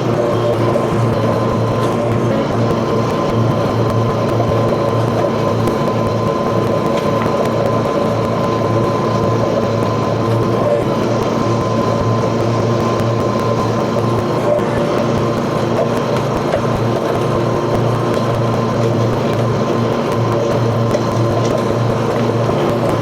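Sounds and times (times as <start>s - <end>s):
high whine: 0.0s - 23.0s
mower engine running: 0.0s - 23.0s.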